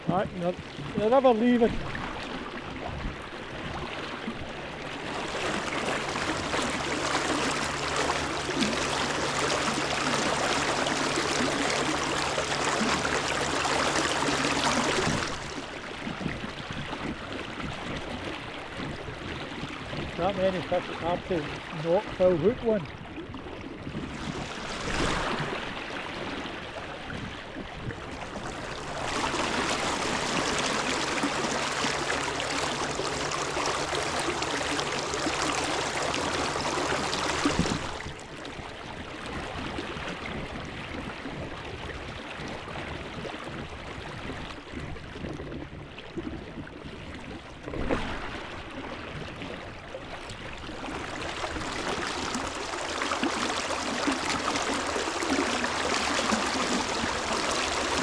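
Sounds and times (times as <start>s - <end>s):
river water rushing: 1.0s - 16.1s, 24.2s - 27.2s, 28.0s - 38.5s, 47.6s - 58.0s.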